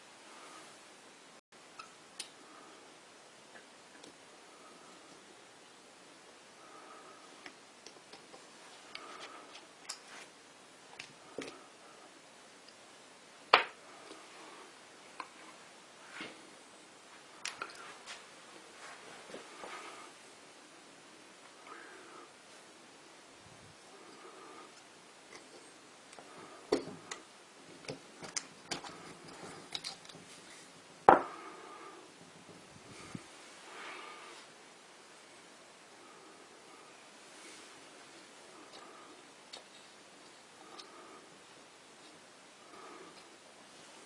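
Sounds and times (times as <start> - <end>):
small tools clicking and tapping: 27.8 - 30.3.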